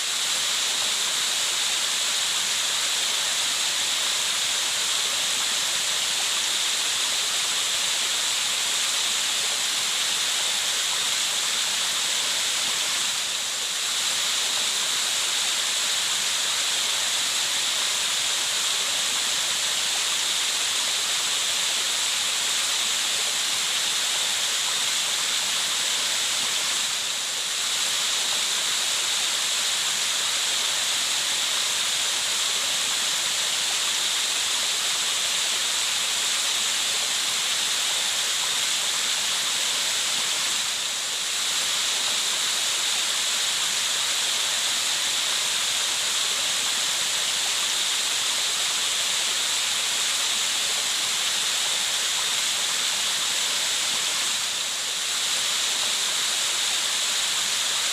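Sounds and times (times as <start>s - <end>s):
white noise hissing: 0.0s - 57.9s.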